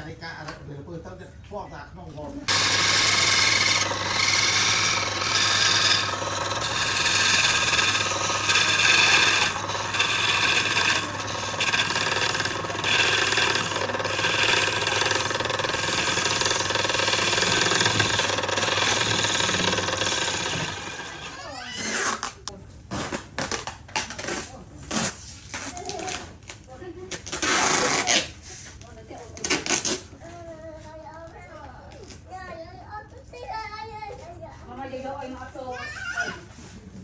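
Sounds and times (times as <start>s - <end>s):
woodworking tool rasping wood: 2.5s - 22.3s.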